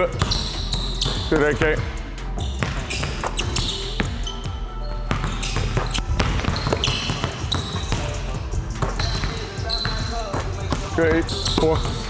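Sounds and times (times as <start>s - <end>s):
basketballs bouncing on gym floor: 0.0s - 12.0s.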